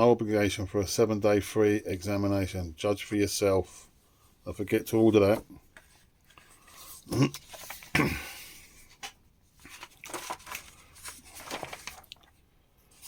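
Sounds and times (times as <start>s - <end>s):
magazine pages rustling: 4.5s - 13.0s.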